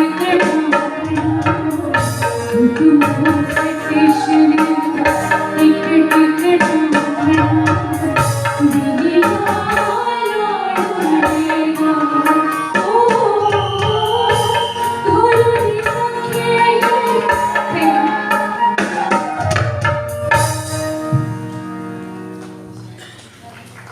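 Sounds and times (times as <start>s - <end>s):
hand drum rhythm: 0.0s - 21.5s
folk song melody: 0.0s - 22.8s.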